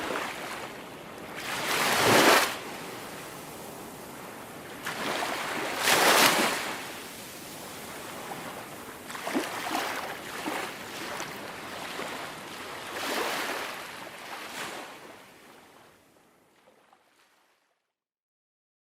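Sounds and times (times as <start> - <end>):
small waves breaking on beach: 0.0 - 17.6.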